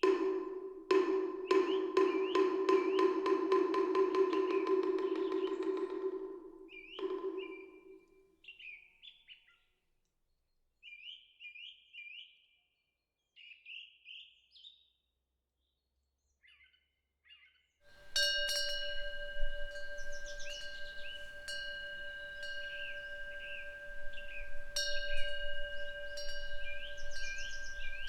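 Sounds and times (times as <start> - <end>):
songbird chirping: 0.0 - 9.2, 18.0 - 28.0
ringing metal tone: 17.9 - 28.0
wind bell ringing: 17.9 - 28.0.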